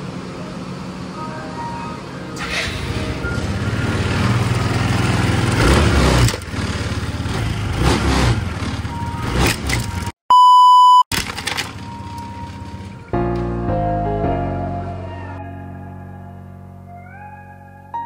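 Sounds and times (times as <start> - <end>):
motorcycle engine running: 2.8 - 10.1, 11.2 - 13.2
electronic beep: 8.9 - 11.1.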